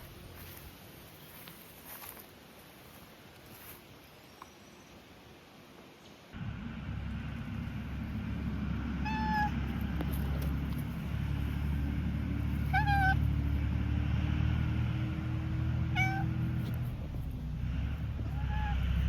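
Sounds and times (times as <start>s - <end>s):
steady low rumble: 6.4s - 19.0s
cat meowing: 9.0s - 9.6s, 12.6s - 13.3s, 15.9s - 16.4s, 18.2s - 19.0s.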